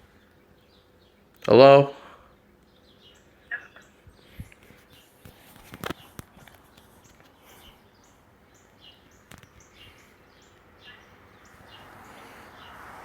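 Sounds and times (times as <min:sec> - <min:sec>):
faint bird chirps: 0:02.3 - 0:05.2, 0:05.8 - 0:12.9.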